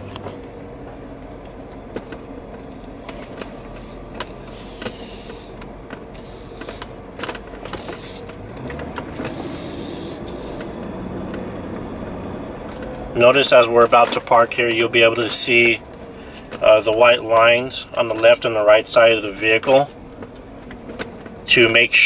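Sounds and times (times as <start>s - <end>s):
car engine and road hum: 0.0s - 22.0s
brief hissing: 9.3s - 10.8s.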